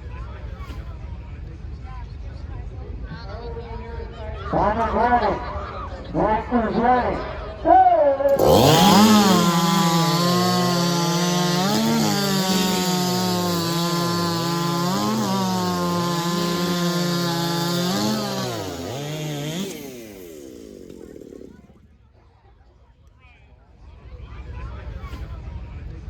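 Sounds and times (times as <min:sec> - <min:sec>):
chainsaw at full throttle: 0:08.3 - 0:21.8.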